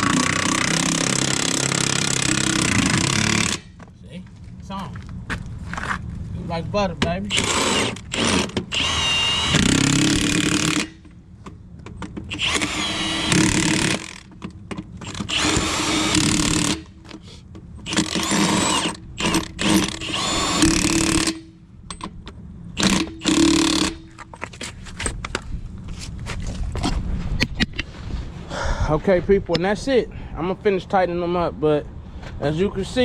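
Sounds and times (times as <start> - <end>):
impact wrench hammering lug nuts: 0.0 - 3.8, 11.9 - 17.0, 17.8 - 22.2, 22.8 - 24.2.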